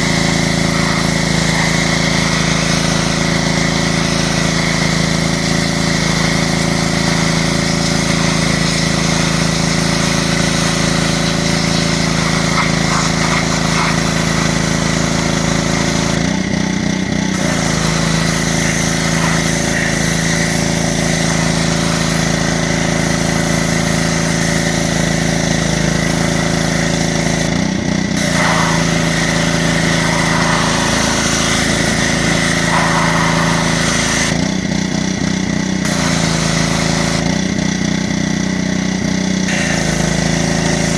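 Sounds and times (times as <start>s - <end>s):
pressure washer motor running: 0.0s - 40.9s
water spray hiss: 0.4s - 3.0s, 10.4s - 16.2s, 17.4s - 24.6s, 28.2s - 34.4s.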